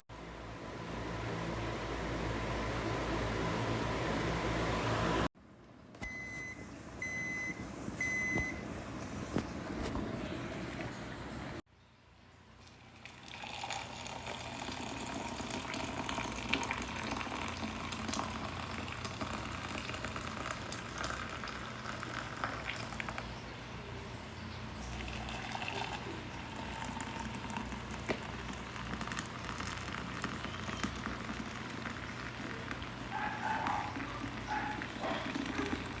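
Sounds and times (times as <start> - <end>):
electric kettle heating water: 12.6 - 23.3, 24.9 - 36.0
water crackles near boiling: 12.6 - 23.3, 25.7 - 33.2.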